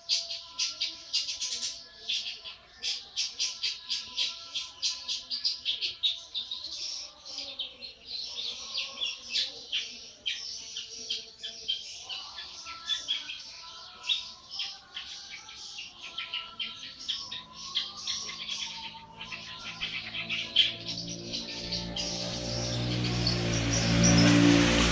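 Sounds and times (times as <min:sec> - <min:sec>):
shrike chattering song: 0:15.8 - 0:24.9.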